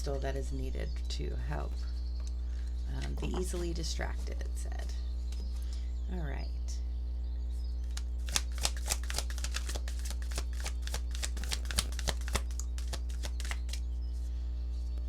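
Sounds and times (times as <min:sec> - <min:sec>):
low electrical hum: 0:00.0 - 0:15.0
cards being shuffled: 0:07.8 - 0:13.9.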